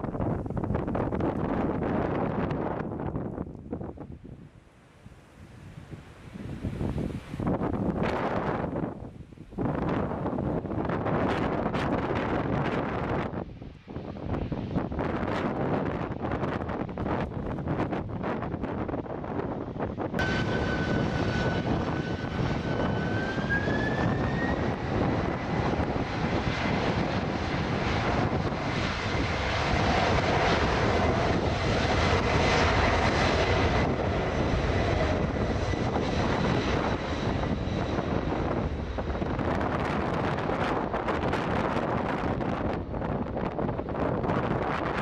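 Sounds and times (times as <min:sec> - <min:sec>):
wind on microphone: 0:00.0 - 0:45.0
jet engines whining: 0:17.7 - 0:45.0.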